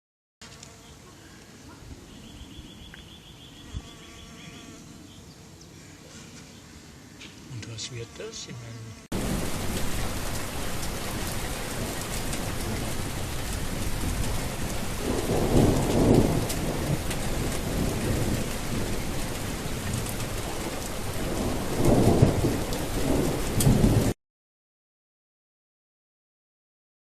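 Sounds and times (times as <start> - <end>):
low rolls of thunder: 9.1 - 24.2
steady rain: 9.1 - 24.2.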